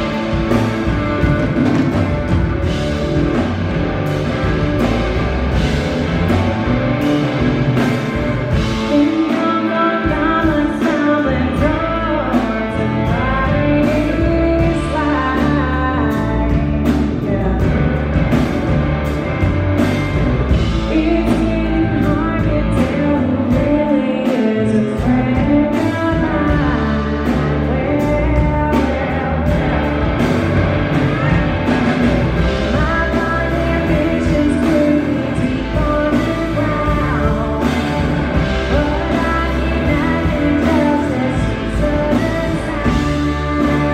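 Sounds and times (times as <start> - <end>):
blues-rock band playing: 0.0 - 43.9
person singing: 8.5 - 18.4, 20.7 - 30.2, 30.8 - 43.9.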